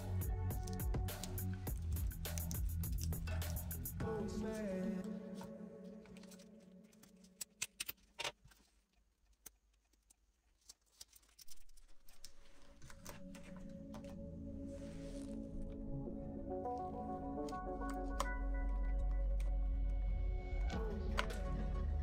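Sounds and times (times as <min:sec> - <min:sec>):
quiet background music: 0:00.0 - 0:08.8, 0:10.6 - 0:22.0.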